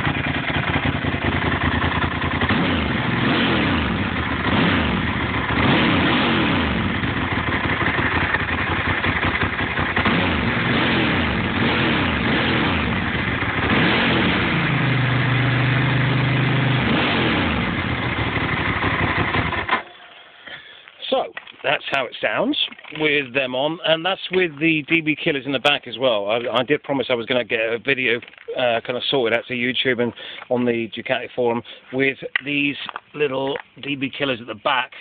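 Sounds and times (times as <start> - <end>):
motorcycle engine revving: 0.0 - 20.0.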